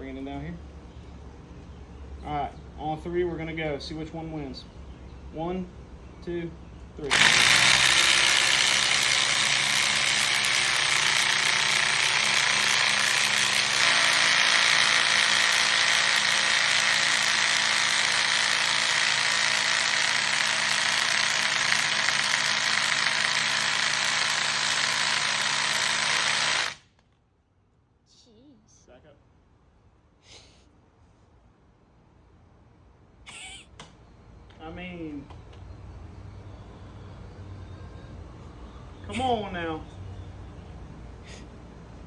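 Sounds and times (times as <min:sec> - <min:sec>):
cordless drills whining: 0:07.0 - 0:26.9.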